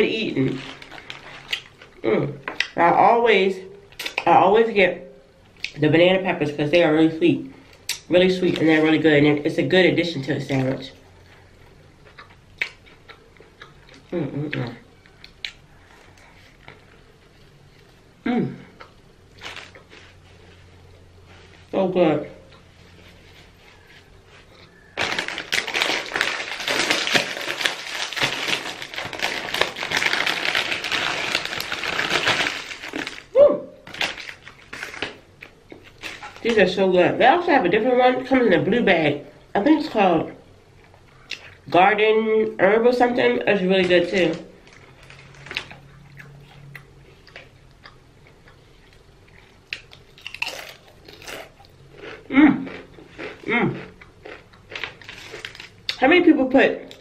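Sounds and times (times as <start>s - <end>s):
crispy chips being chewed: 0.1s - 2.8s, 10.5s - 18.1s, 18.8s - 21.5s, 22.4s - 36.6s, 44.0s - 56.0s
chewing with mouth clicks: 12.0s - 16.9s, 45.2s - 56.0s.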